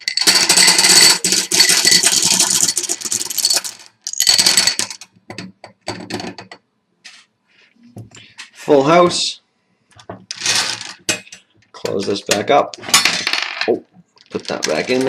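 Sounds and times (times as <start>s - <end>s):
marbles clattering into bingo cage: 0.0s - 5.1s, 10.3s - 15.0s.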